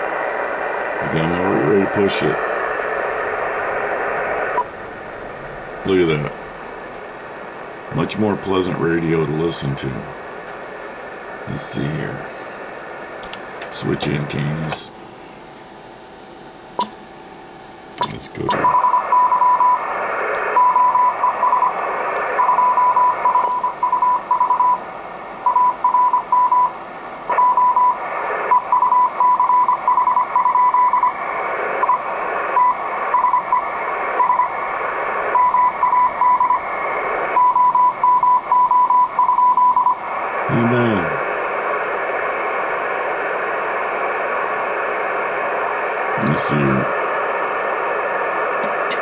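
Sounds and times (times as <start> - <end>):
radio band hiss: 0.0 - 49.0
morse code tone keyed on and off: 18.0 - 19.9, 20.5 - 21.8, 22.4 - 31.2, 31.8 - 41.6.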